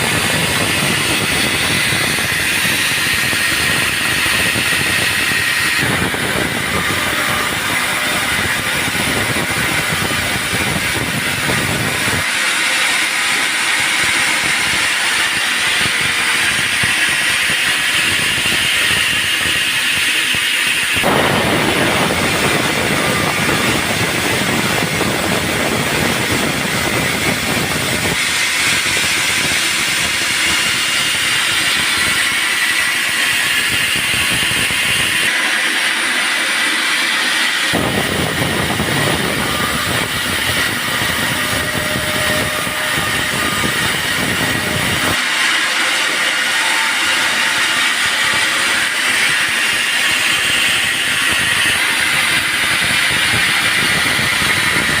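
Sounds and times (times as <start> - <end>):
bandsaw cutting a log: 0.0 - 55.0.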